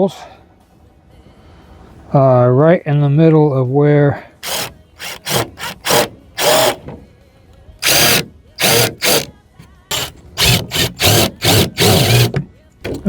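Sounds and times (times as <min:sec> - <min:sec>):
power drill boring into wood: 0:04.4 - 0:06.9, 0:07.8 - 0:09.3, 0:09.9 - 0:12.4.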